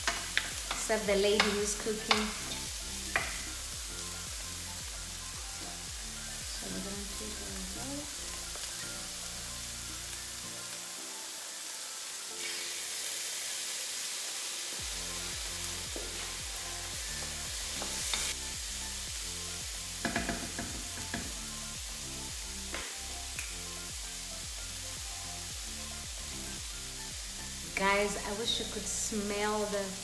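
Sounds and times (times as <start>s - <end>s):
utensil clicking against pan: 0.0s - 3.5s
background music: 0.0s - 30.0s
vegetables sizzling in frying pan: 0.0s - 30.0s.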